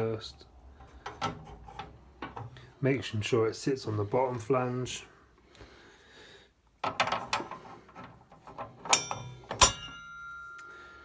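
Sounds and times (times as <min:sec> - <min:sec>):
metal scraping: 0:00.8 - 0:02.7
sharp metallic knocks ringing: 0:08.9 - 0:10.8
saw blade clinking on flange: 0:08.9 - 0:11.0.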